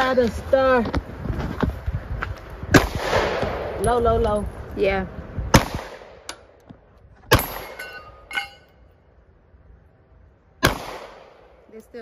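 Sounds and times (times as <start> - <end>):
pistol shots: 2.7 - 3.8, 5.5 - 6.5, 10.6 - 11.5
metallic clinks and ringing: 7.4 - 8.9.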